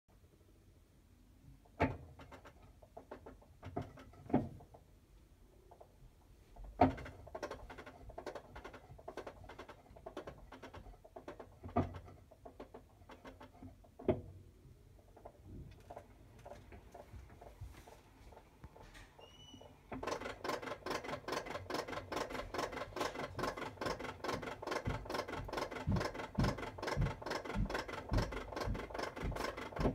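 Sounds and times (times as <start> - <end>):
clicking and rattling: 1.6 - 4.9, 5.6 - 14.3, 15.0 - 17.6, 18.3 - 29.9
washing machine spinning: 15.0 - 29.9.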